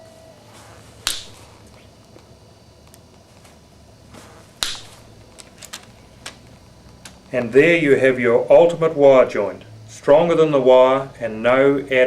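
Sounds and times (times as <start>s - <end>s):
sharp metallic snap: 1.0s - 1.6s, 4.6s - 5.1s.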